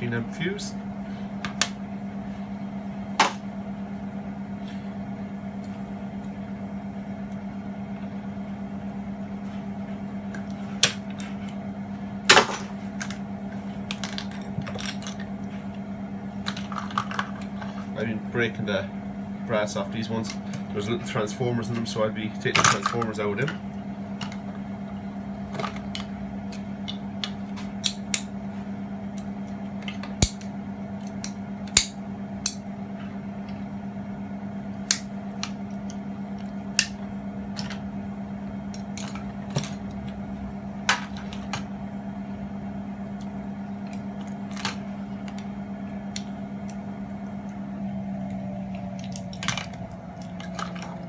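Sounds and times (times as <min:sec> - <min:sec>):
steady electrical hum: 0:00.0 - 0:51.0.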